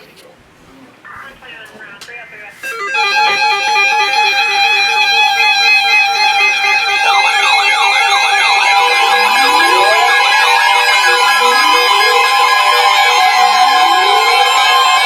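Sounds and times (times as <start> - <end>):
electronic alert tones beeping: 2.6 - 15.0
siren-like sweeping tone: 2.6 - 15.0.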